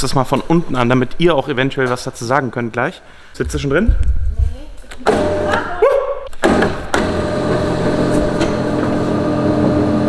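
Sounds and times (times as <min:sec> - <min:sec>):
car engine starting and idling: 0:06.4 - 0:10.0.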